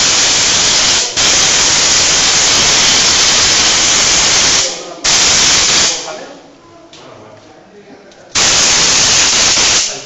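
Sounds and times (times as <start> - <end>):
air jet hissing: 0.0 - 6.2, 8.4 - 10.0.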